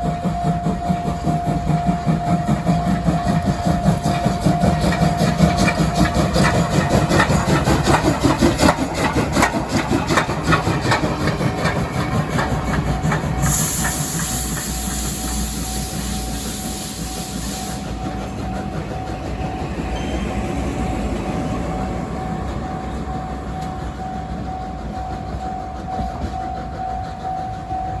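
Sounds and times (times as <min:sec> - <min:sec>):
level crossing warning bell: 0:00.0 - 0:07.8, 0:21.9 - 0:28.0
train wheels clicking over rail joints: 0:00.0 - 0:28.0
steam hiss: 0:01.1 - 0:20.3.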